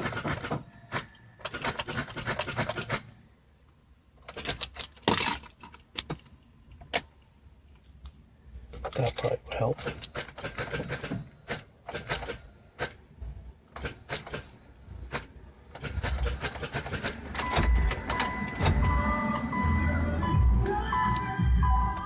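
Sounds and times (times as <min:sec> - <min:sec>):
steady electronic tone: 0:17.5 - 0:22.0.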